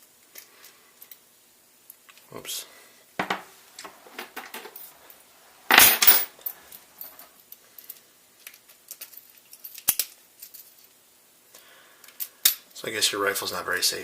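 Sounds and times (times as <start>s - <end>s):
metal clatter of tools: 5.7s - 10.8s.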